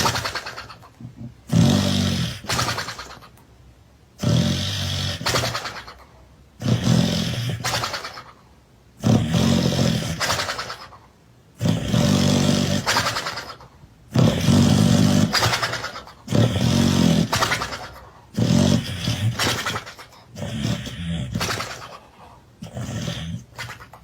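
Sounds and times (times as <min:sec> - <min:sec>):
dog snoring: 0:00.0 - 0:03.3, 0:04.2 - 0:06.0, 0:06.6 - 0:08.3, 0:09.0 - 0:11.0, 0:11.6 - 0:24.0.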